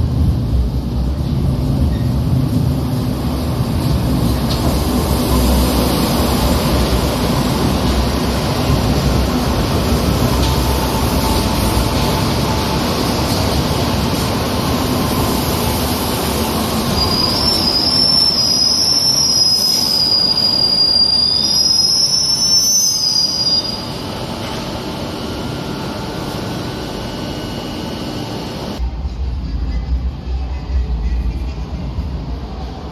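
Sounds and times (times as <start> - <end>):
train rumble: 0.0 - 22.0, 23.7 - 32.9
train wheels squealing: 1.9 - 2.2, 9.7 - 28.3.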